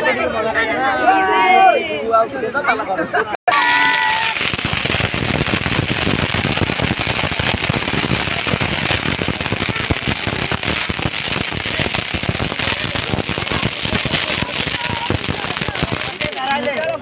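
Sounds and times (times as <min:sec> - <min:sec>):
firecrackers crackling: 0:03.5 - 0:17.0.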